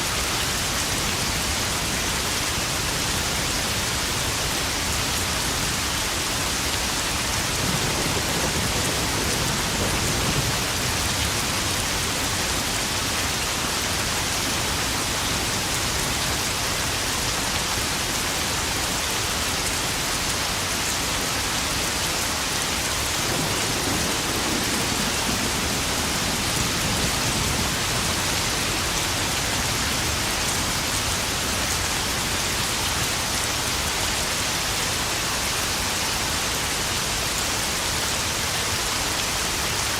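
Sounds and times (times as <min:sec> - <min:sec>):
heavy rain on puddles: 0:00.0 - 0:39.9
distant thunder rumbling: 0:07.6 - 0:12.7, 0:23.2 - 0:30.5.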